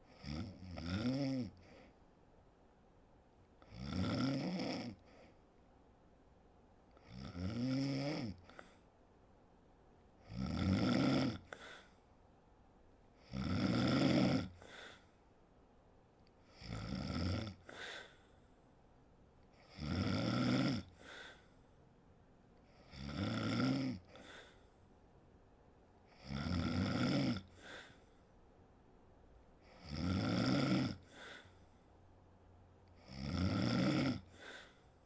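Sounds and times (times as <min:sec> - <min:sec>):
woman snoring: 0:00.1 - 0:01.7, 0:03.6 - 0:05.1, 0:07.0 - 0:08.7, 0:10.2 - 0:11.9, 0:13.2 - 0:15.0, 0:16.5 - 0:18.2, 0:19.6 - 0:21.4, 0:22.8 - 0:24.6, 0:26.1 - 0:28.0, 0:29.6 - 0:31.5, 0:33.0 - 0:34.8.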